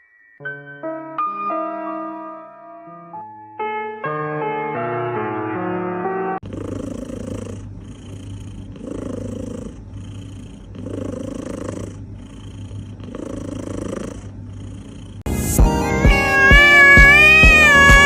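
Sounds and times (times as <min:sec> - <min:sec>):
music: 0:00.0 - 0:06.4, 0:15.3 - 0:18.0
cat purring: 0:06.4 - 0:15.3.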